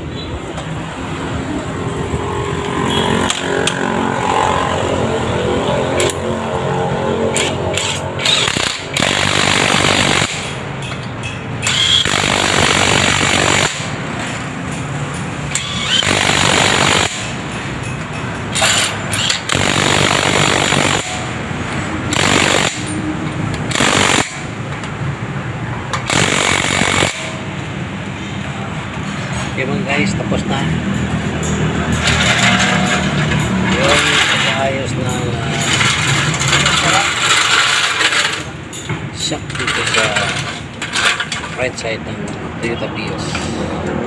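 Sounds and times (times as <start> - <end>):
impact wrench hammering: 7.3 - 25.1, 25.8 - 27.9, 31.0 - 34.7.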